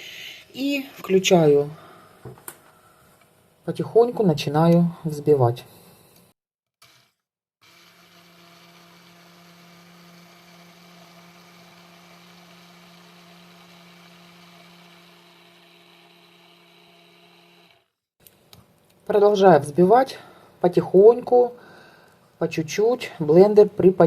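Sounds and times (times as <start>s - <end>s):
immersion blender motor humming: 6.8s - 18.0s.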